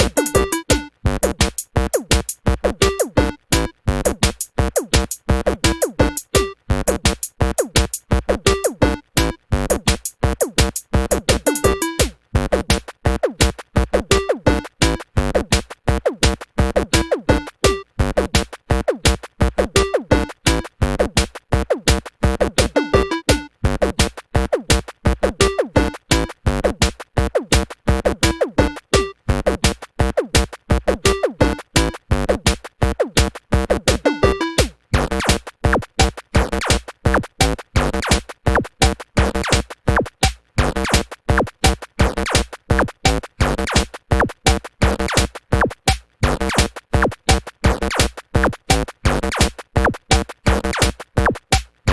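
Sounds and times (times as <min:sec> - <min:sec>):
drum machine beat: 0:00.0 - 0:51.9
synthesizer tones: 0:00.1 - 0:00.9, 0:11.5 - 0:12.0, 0:22.8 - 0:23.5, 0:34.1 - 0:34.6.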